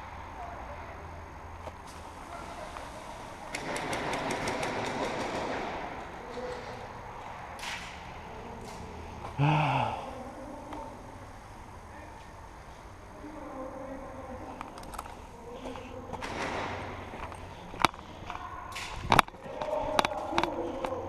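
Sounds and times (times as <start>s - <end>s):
airsoft gun firing: 3.5s - 6.0s.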